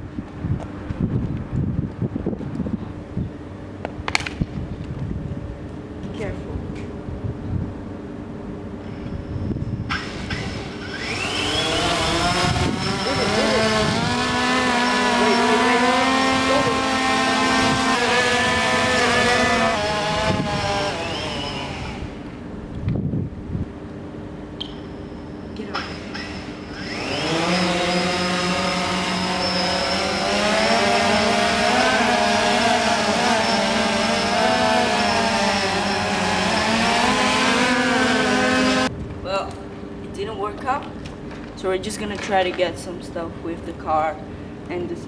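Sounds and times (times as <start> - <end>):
small electric motor whining: 8.9 - 22.5, 25.6 - 38.9.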